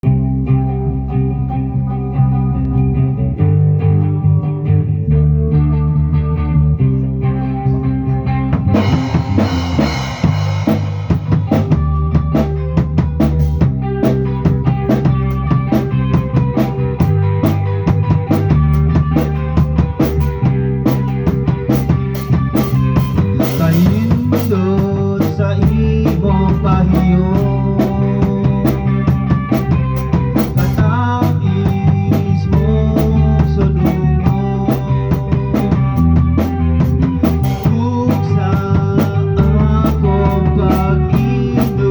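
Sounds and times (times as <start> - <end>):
bass guitar: 0.0 - 41.9
electric guitar: 0.0 - 41.9
drum kit beat: 8.6 - 41.9.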